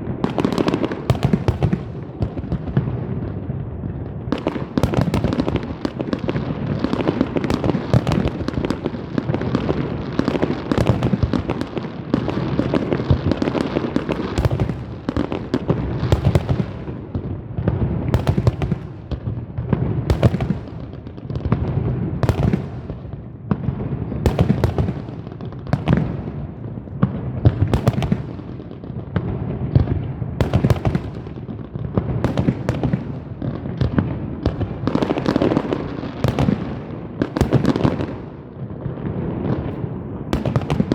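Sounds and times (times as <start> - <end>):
fireworks bangs and crackling: 0.0 - 40.9
sharp firework cracks: 32.2 - 38.5, 39.4 - 40.9.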